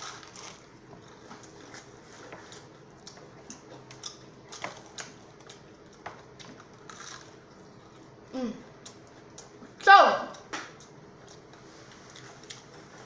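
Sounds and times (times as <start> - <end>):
crunchy fried chicken chewing: 0.0 - 8.2.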